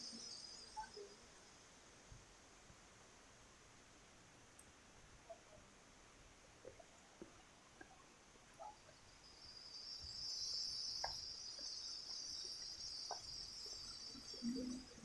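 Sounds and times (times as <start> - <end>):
high steady insect buzz: 8.6 - 15.0.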